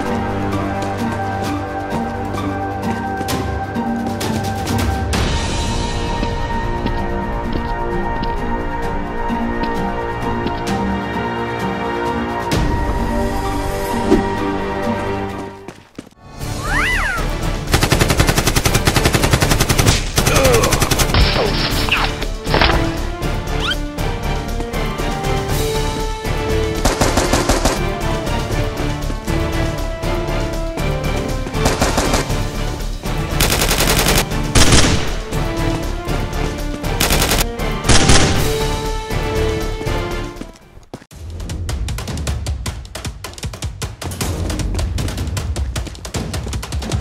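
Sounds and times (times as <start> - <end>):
music: 0.0 - 47.0
gunfire bursts: 17.7 - 21.4, 26.8 - 28.0, 31.6 - 32.4, 33.3 - 35.4, 37.0 - 38.7
automatic gunfire: 31.6 - 32.3.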